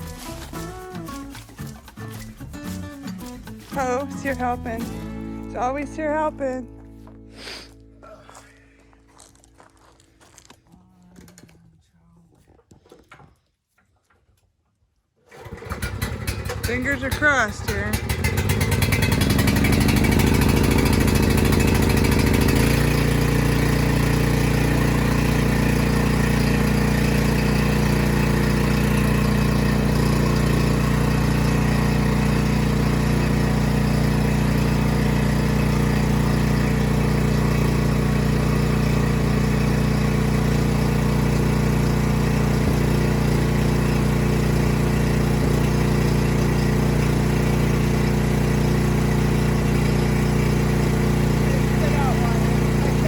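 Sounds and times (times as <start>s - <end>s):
generator engine starting and running: 0.0s - 11.7s, 15.2s - 53.0s.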